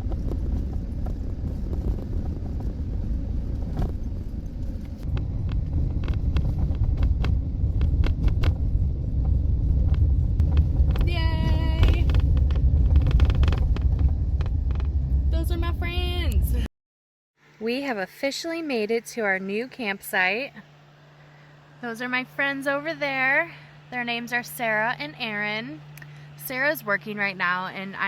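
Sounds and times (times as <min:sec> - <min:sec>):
road rumble inside vehicle: 0:00.0 - 0:16.7
small rattles and knocks: 0:11.8 - 0:15.0.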